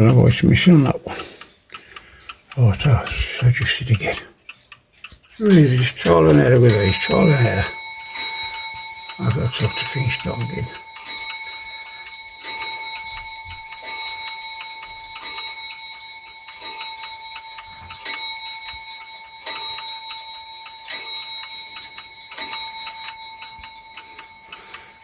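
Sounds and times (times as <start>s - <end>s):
wall clock striking gong: 6.6s - 25.0s.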